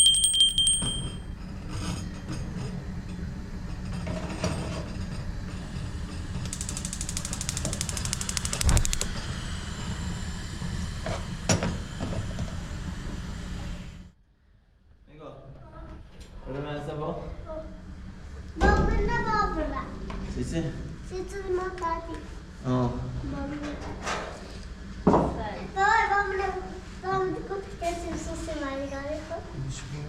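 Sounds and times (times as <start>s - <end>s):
machine ratcheting mechanism: 6.4s - 9.1s.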